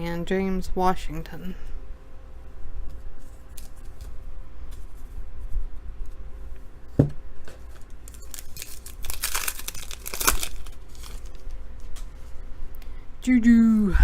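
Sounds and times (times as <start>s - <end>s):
wrapper tearing and crinkling: 8.0s - 11.6s.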